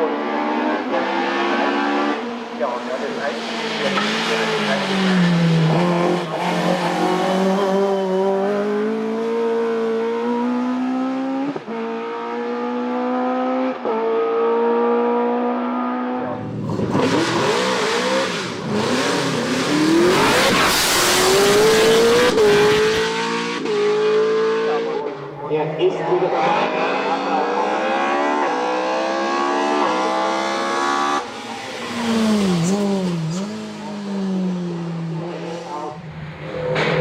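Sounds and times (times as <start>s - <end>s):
race car engine accelerating: 0.0s - 25.5s, 26.1s - 37.0s
loud rushing noise: 19.7s - 23.2s, 35.9s - 37.0s.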